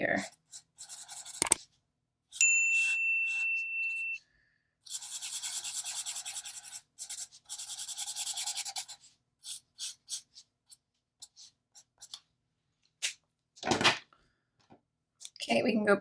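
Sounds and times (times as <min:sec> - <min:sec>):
marker scratching across paper: 0:00.0 - 0:01.8, 0:02.8 - 0:03.7, 0:04.9 - 0:12.3.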